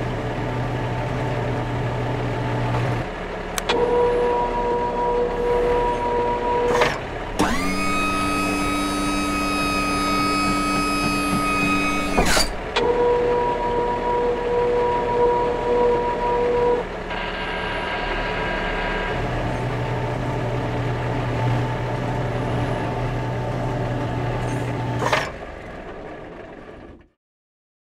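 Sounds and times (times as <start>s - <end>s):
electric motor whining through gears: 0.0s - 27.0s
click: 3.5s - 3.8s.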